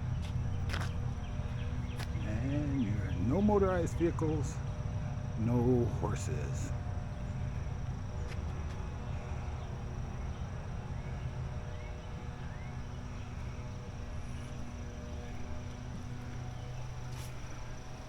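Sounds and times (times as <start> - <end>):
high insect drone: 0.0 - 18.0.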